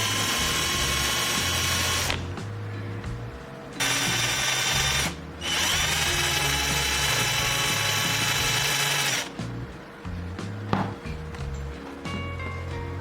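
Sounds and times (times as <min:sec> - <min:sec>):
power tool motor whining: 0:00.0 - 0:02.4, 0:03.8 - 0:09.4
background music: 0:00.0 - 0:13.0.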